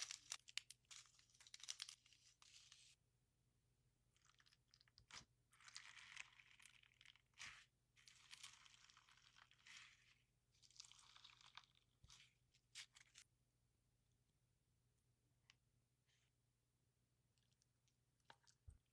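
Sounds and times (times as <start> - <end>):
crunchy slime crackling: 0.0 - 2.0.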